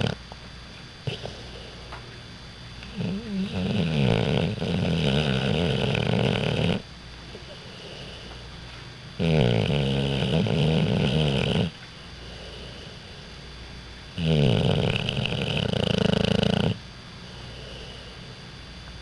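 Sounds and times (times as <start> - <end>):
puppy snoring: 0.0 - 0.2, 1.0 - 2.1, 2.8 - 8.5, 9.2 - 13.4, 14.1 - 18.4
puppy breathing: 1.1 - 2.0, 2.8 - 6.8, 9.3 - 13.4.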